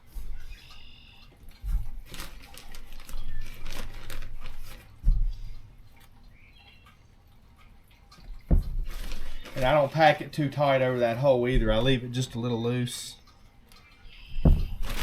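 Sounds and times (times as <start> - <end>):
dull thumps: 1.6 - 5.8, 8.2 - 10.4, 11.4 - 12.5, 14.3 - 15.0
hands rustling soil: 1.6 - 6.1, 8.5 - 12.2, 14.4 - 15.0.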